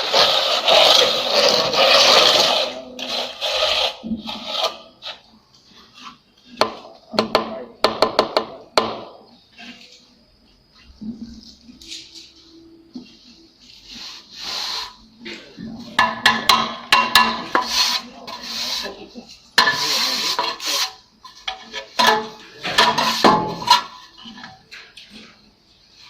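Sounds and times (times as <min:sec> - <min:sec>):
trowel scraping render on wall: 0:00.0 - 0:06.8, 0:16.0 - 0:25.3.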